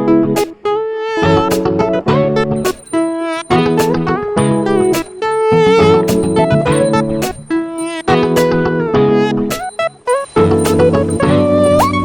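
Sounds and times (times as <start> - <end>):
guitar-led music with steady beat: 3.5 - 12.0.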